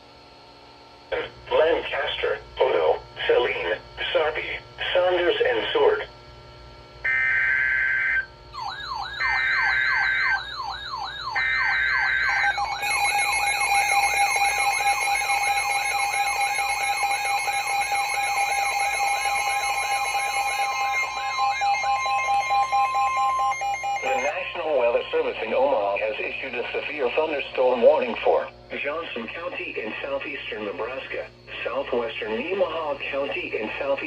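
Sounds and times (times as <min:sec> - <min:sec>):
long steady attention tone: 0:07.0 - 0:34.0
buzzing data tones: 0:07.1 - 0:24.7
siren-like alarm sweeping up: 0:07.1 - 0:24.8.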